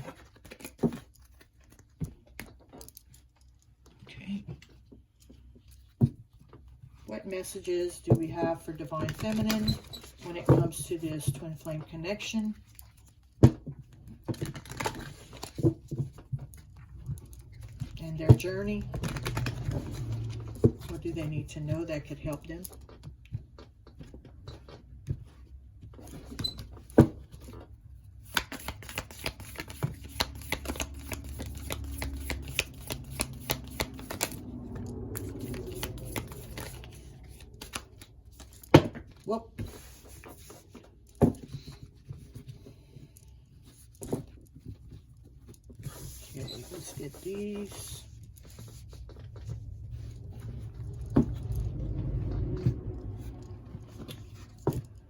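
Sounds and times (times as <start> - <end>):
cards rustling and clicking: 0.0 - 3.8, 12.6 - 18.0, 18.6 - 20.9, 27.3 - 52.1
cards shuffling: 18.8 - 20.6, 28.2 - 38.7.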